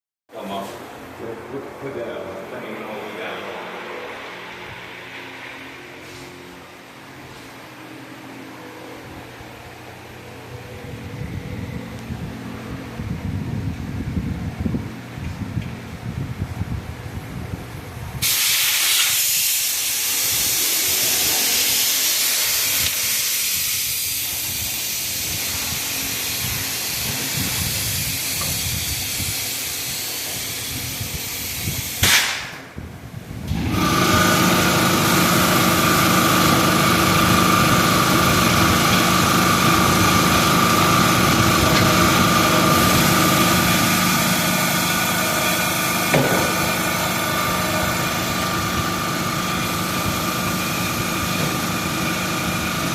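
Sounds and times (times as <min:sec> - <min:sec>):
machine whining: 0:01.0 - 0:18.3, 0:32.6 - 0:52.9
air hissing: 0:18.2 - 0:32.8.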